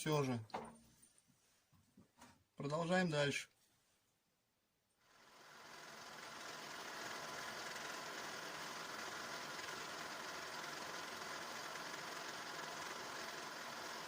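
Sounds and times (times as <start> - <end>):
power tool motor machining steel: 5.2 - 14.0.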